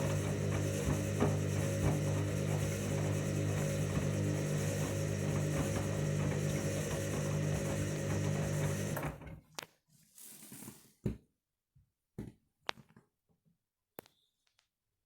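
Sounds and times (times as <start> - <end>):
washing machine motor running: 0.0 - 9.2.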